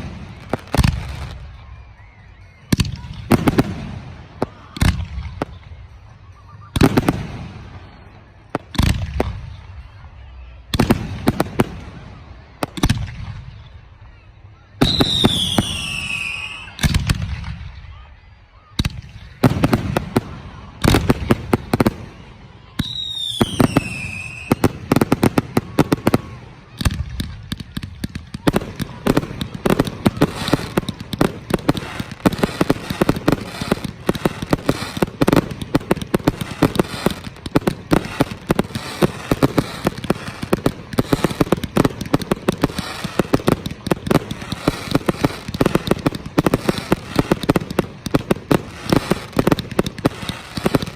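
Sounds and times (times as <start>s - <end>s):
firework crackling: 0.0s - 1.8s, 18.8s - 50.9s
firework whistle falling in pitch: 14.8s - 16.8s, 22.8s - 24.6s
fireworks booming: 18.8s - 50.9s.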